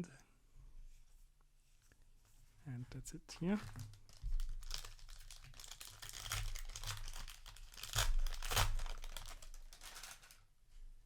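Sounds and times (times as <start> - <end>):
plastic wrapper crinkling: 3.4 - 10.4.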